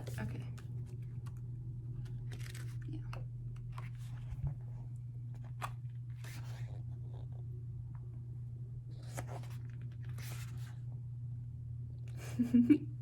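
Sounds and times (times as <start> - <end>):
steady low hum: 0.0 - 13.0
paper rustling: 2.3 - 2.8, 9.0 - 10.7.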